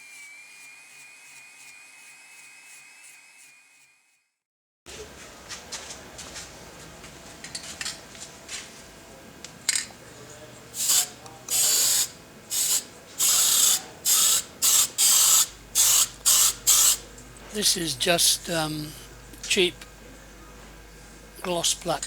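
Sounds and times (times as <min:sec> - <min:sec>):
aerosol spray hissing bursts: 0:10.8 - 0:17.0.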